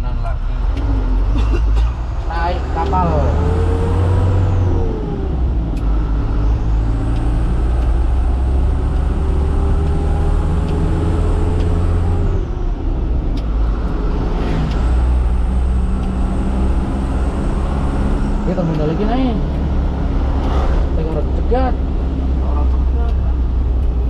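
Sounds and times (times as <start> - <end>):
truck engine humming: 0.0 - 24.0.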